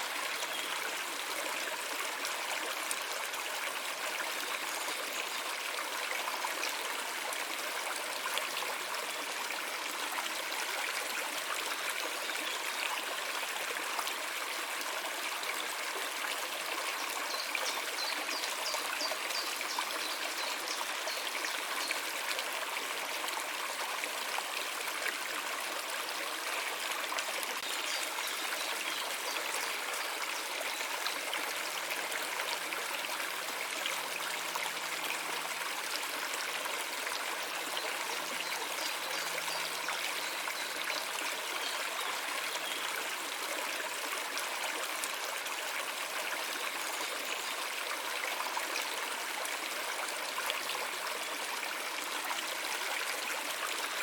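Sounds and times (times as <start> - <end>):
stream water trickling: 0.0 - 54.0.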